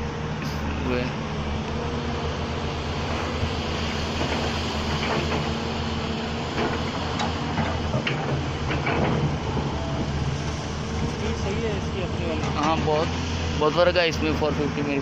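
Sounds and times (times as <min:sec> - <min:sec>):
excavator engine drone: 0:00.0 - 0:15.0
knocks and clanks: 0:06.5 - 0:10.1.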